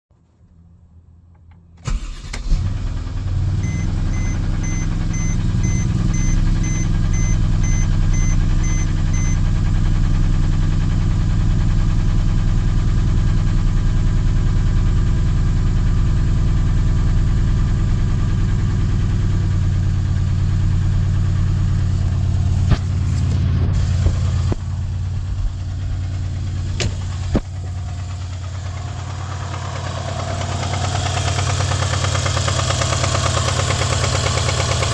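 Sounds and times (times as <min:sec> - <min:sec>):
car engine starting and idling: 0:00.6 - 0:34.9
short beeps: 0:03.6 - 0:09.4
engine knock: 0:16.4 - 0:34.9.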